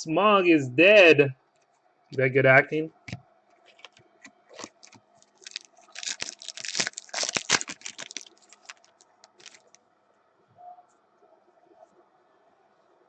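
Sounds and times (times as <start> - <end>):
foil card pack crinkling: 3.7 - 9.8.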